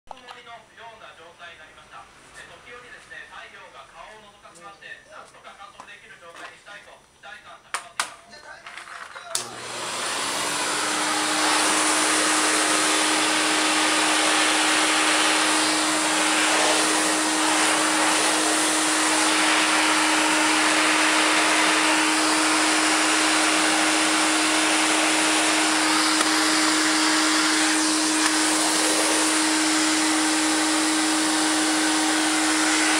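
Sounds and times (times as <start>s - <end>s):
vacuum cleaner switch click: 9.3s - 9.8s, 26.1s - 26.4s, 28.2s - 28.4s
vacuum cleaner motor running: 9.3s - 32.9s.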